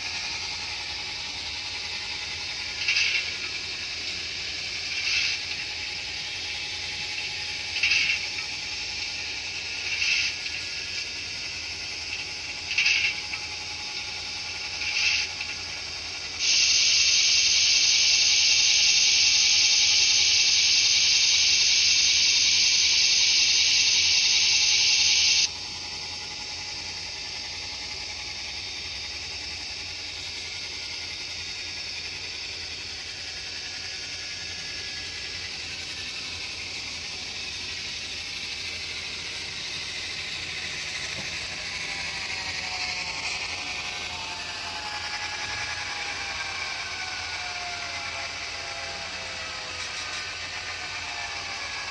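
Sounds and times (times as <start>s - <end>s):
steam hiss effect: 0.0s - 13.2s, 14.0s - 25.5s.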